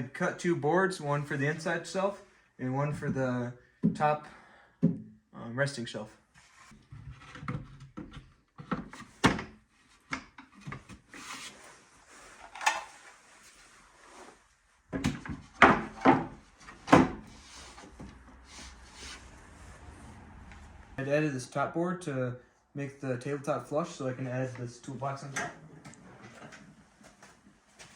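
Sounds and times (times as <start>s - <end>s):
wooden boards knocking and scraping: 14.9s - 17.4s.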